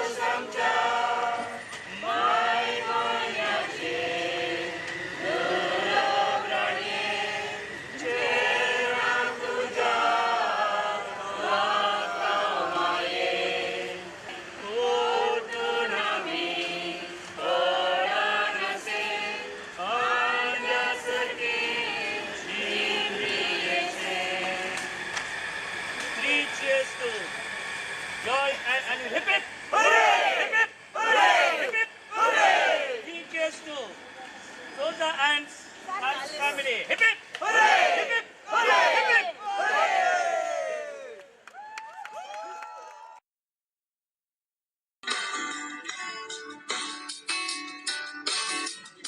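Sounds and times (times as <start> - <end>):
group of people singing: 0.0 - 25.1.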